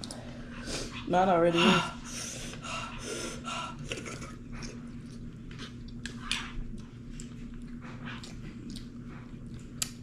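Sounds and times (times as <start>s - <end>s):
faint steady hum: 0.0s - 10.0s
person chewing: 3.8s - 10.0s.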